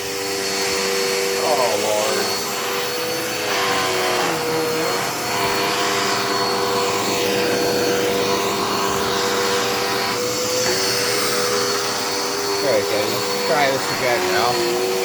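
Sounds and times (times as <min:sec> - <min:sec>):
vacuum cleaner running: 0:00.0 - 0:15.0.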